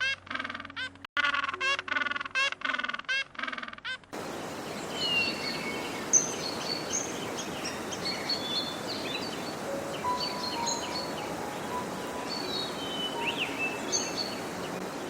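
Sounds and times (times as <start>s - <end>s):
nasal quack-like animal calls: 0.0s - 4.1s
small birds chirping: 4.2s - 15.0s.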